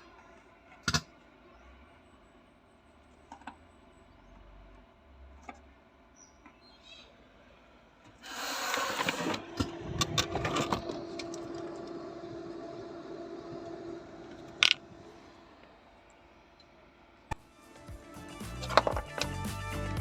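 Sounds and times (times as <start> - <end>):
faint steady hum: 0.0 - 17.5
clicks and knocks of tools: 8.1 - 12.0, 14.3 - 14.9
tools scraping: 8.2 - 11.8, 18.5 - 19.4.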